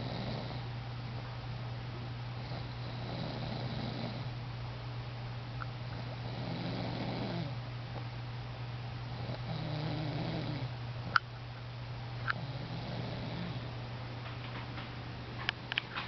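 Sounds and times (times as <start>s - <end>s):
pet snoring: 0.0s - 0.6s, 2.4s - 4.3s, 5.9s - 7.6s, 9.1s - 10.7s, 12.3s - 13.7s.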